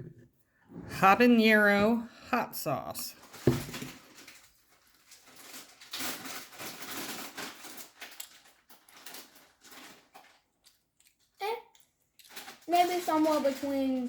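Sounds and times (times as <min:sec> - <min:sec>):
rustling handling noises: 0:03.2 - 0:10.5, 0:12.2 - 0:14.0.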